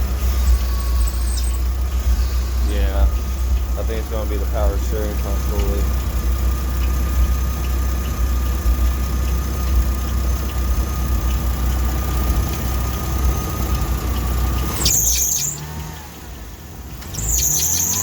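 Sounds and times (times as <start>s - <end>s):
high-pitched belt squeal: 0.0s - 3.5s, 13.3s - 16.1s, 17.0s - 18.0s
truck engine running: 0.0s - 18.0s.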